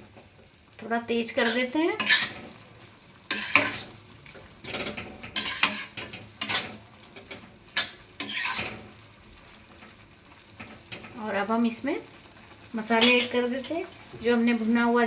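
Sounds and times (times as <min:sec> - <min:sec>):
spoon scraping cooking pan: 0:01.2 - 0:09.1, 0:12.8 - 0:14.4.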